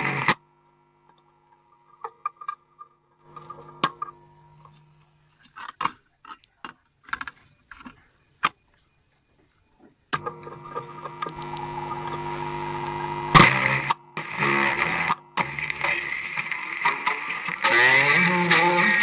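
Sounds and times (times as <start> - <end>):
loud sharp crack: 13.3 - 13.7.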